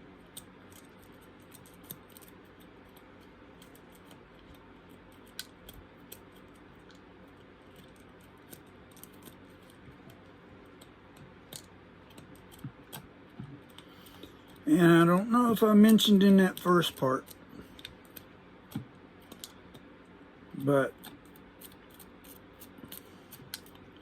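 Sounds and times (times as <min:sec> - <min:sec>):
seeds clicking: 0:19.2 - 0:19.9.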